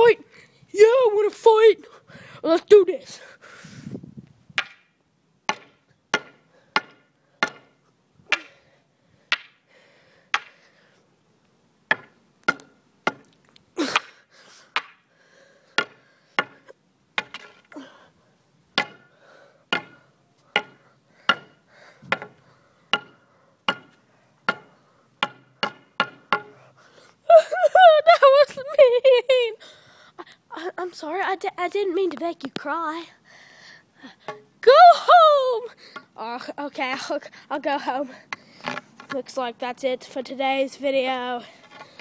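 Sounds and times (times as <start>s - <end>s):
wooden pole striking hard surface: 4.6s - 4.9s, 5.5s - 8.5s, 9.3s - 9.6s, 11.9s - 13.4s, 15.8s - 16.6s, 17.2s - 17.7s, 18.8s - 19.1s, 19.7s - 26.6s, 34.3s - 34.5s.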